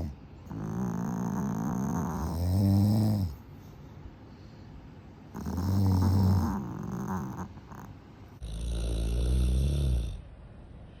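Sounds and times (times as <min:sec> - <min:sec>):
dog snoring: 0:00.0 - 0:03.4, 0:05.3 - 0:10.3.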